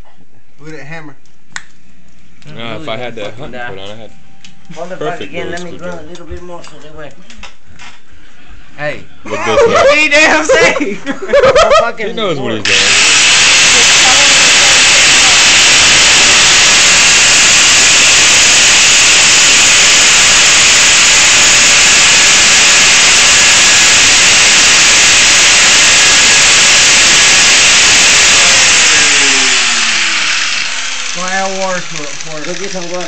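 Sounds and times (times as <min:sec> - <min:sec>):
angle grinder cutting metal: 0:12.6 - 0:33.0.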